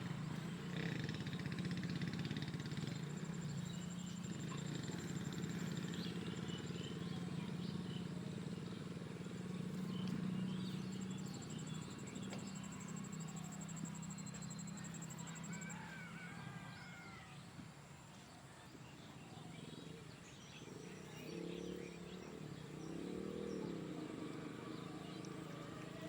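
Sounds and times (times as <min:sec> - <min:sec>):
small engine running: 0:00.0 - 0:17.2, 0:20.8 - 0:26.0
faint bird chirps: 0:00.2 - 0:17.6.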